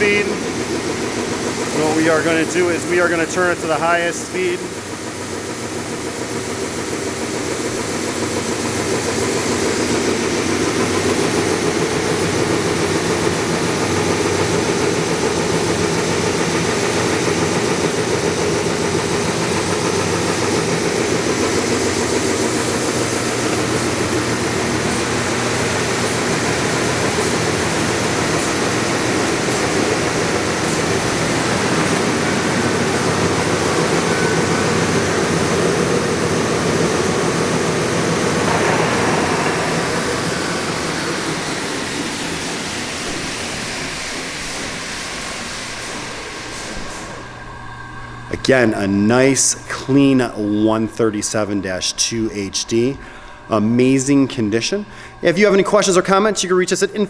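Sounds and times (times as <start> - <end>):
belt sander humming: 0.0 - 43.8.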